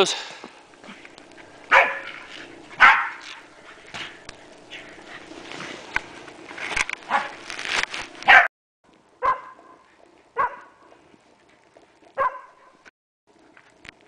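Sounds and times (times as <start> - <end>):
dog barking: 1.7 - 2.2, 2.8 - 3.4, 7.1 - 7.3, 8.3 - 8.5, 9.2 - 9.8, 10.4 - 10.7, 12.2 - 12.8.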